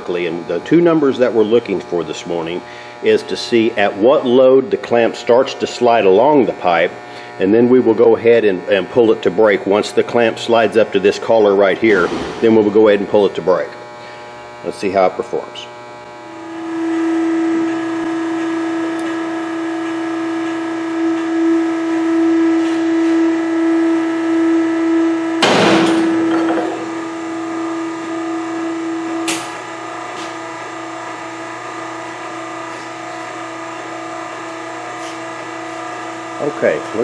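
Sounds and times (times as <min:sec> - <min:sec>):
machine humming: 0:00.0 - 0:37.0
loud short burst of noise: 0:11.7 - 0:13.4.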